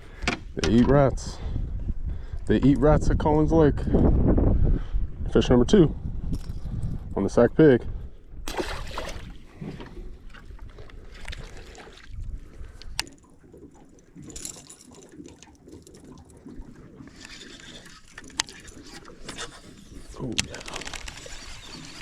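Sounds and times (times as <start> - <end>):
water sloshing and trickling: 8.5 - 22.0.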